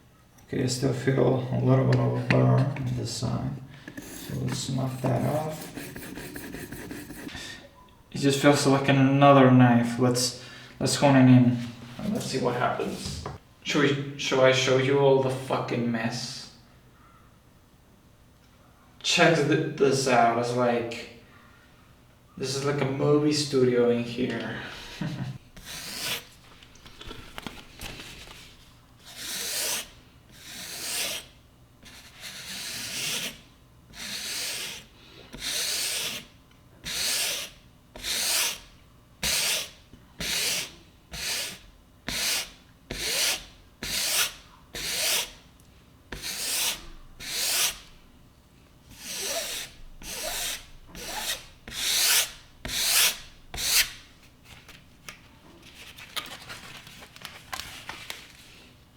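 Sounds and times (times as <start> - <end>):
sharpening stone rasping on knife: 3.9 - 7.3, 29.1 - 31.3, 31.9 - 33.4, 34.0 - 38.6, 39.2 - 45.4, 46.1 - 47.8, 48.9 - 53.9.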